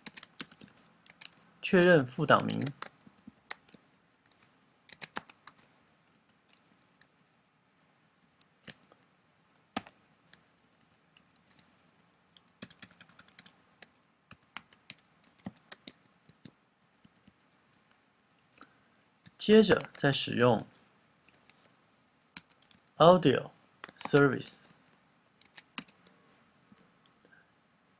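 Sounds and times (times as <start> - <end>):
typing on computer keyboard: 0.0 - 1.4, 2.3 - 5.7, 9.8 - 10.4, 11.1 - 11.7, 12.3 - 17.9, 18.5 - 20.0, 22.4 - 22.9, 23.8 - 24.2, 25.4 - 26.2.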